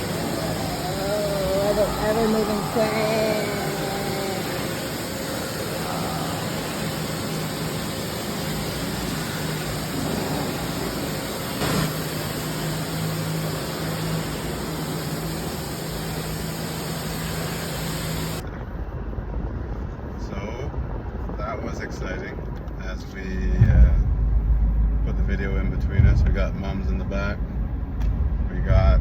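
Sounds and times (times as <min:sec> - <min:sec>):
machinery loud hiss: 0:00.0 - 0:18.4
low hum: 0:00.0 - 0:21.2, 0:23.0 - 0:29.0.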